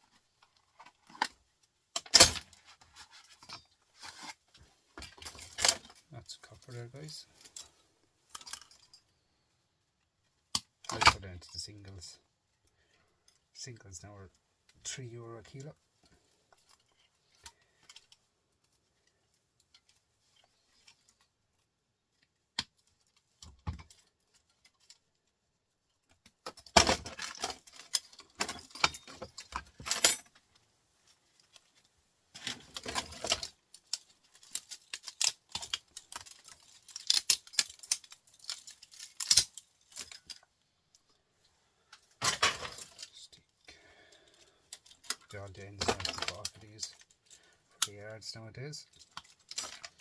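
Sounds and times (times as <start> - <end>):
scrap metal clinking and rattling: 2.0 - 9.2, 26.4 - 41.0, 41.8 - 50.0.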